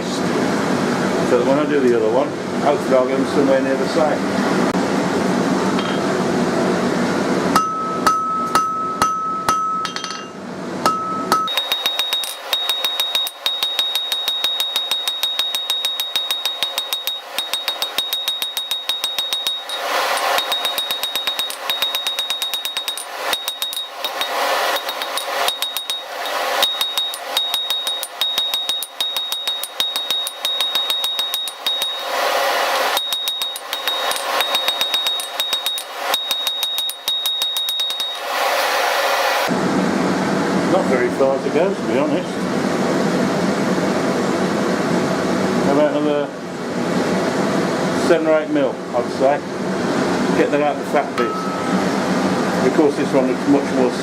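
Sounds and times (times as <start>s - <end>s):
hammer ringing on anvil: 7.6s - 38.3s, 51.2s - 52.2s.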